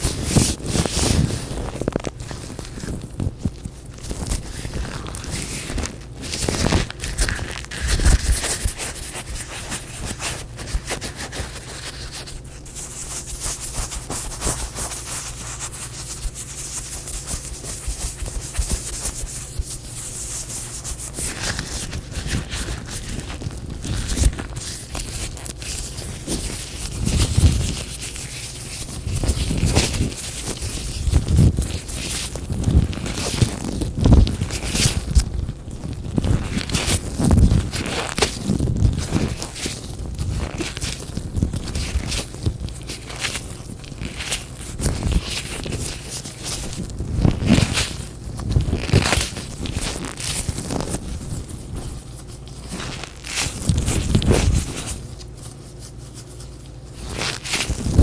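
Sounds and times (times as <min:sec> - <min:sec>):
latex gloves rubbing and crinkling: 0:00.0 - 0:58.0.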